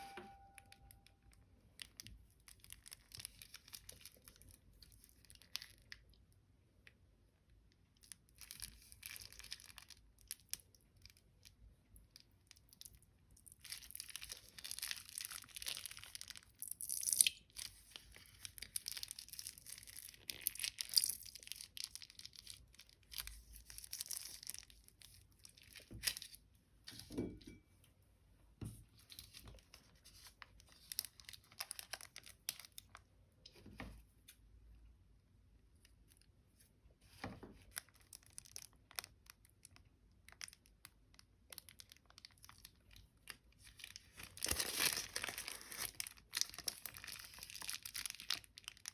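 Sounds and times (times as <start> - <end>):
plastic bags crinkling: 13.5 - 16.7, 17.5 - 26.4, 29.2 - 33.0, 41.5 - 48.9.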